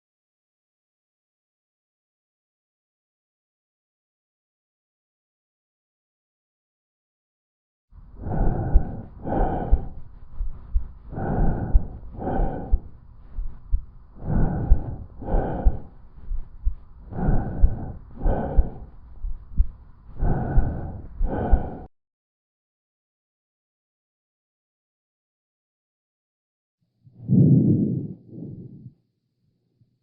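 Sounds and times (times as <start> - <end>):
breathing through a stethoscope: 8.0 - 21.9.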